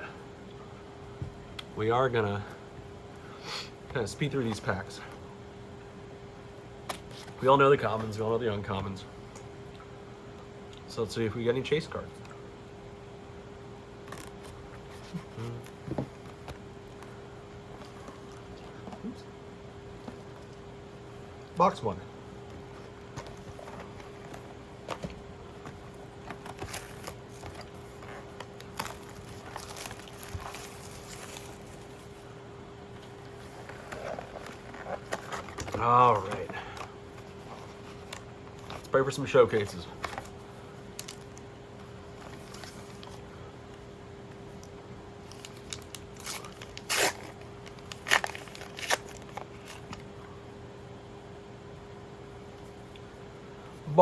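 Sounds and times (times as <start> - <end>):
faint steady hum: 0.0 - 54.0
packaging crackling: 26.3 - 32.0, 45.2 - 50.0
wrappers tearing and crinkling: 26.3 - 32.0, 41.0 - 41.4, 45.2 - 50.0.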